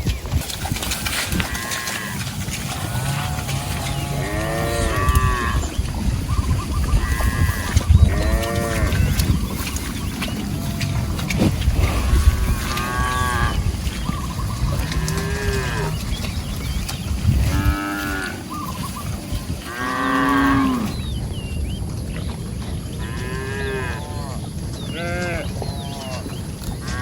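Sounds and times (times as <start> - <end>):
cattle mooing: 1.4 - 5.8, 7.0 - 9.3, 10.4 - 13.8, 14.7 - 16.1, 17.5 - 18.5, 19.7 - 21.0.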